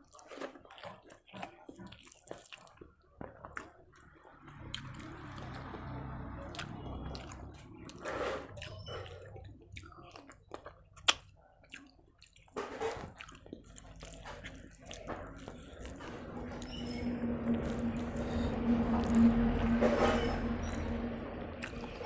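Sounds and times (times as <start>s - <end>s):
chewing clicks: 8.6s - 19.4s, 21.6s - 22.0s.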